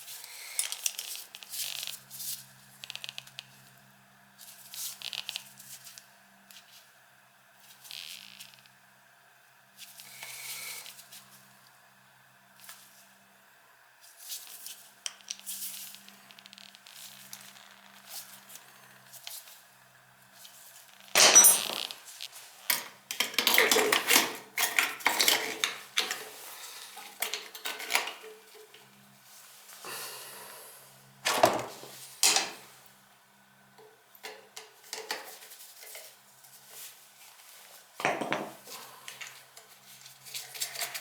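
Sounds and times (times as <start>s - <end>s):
loud metal clanks: 21.2s - 21.8s
metal tools clinking: 21.2s - 22.0s, 22.7s - 28.7s, 32.2s - 32.6s.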